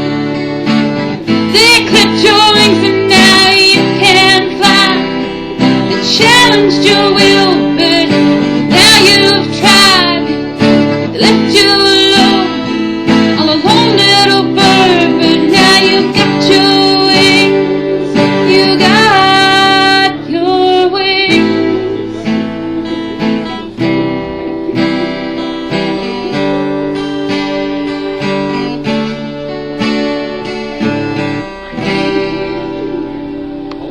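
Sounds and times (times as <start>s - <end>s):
acoustic guitar strumming and picking: 0.0s - 33.9s.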